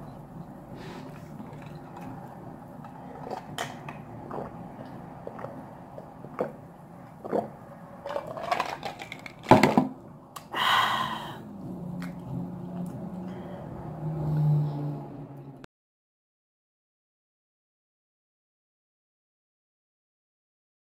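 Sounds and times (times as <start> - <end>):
chewing and mouth sounds: 0.4 - 8.8, 12.0 - 13.4.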